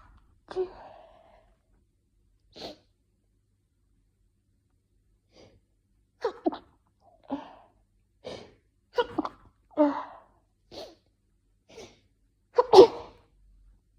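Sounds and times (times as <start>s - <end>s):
woman sneezing: 12.6s - 13.2s.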